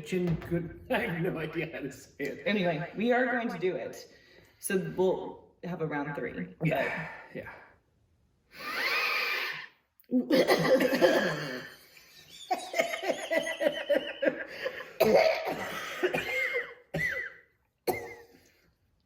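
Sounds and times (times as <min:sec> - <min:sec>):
coughing: 0:10.1 - 0:11.8, 0:12.6 - 0:18.6
people laughing: 0:10.3 - 0:14.9.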